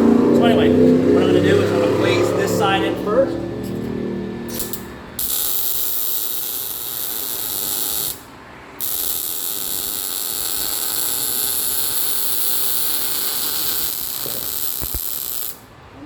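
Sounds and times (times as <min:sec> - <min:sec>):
welding arc hissing: 0:04.5 - 0:15.7.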